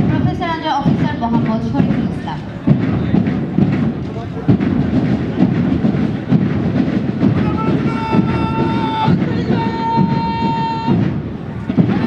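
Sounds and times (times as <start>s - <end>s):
pulsing marching drums: 0.0s - 12.0s
wind instrument long notes: 7.3s - 11.0s.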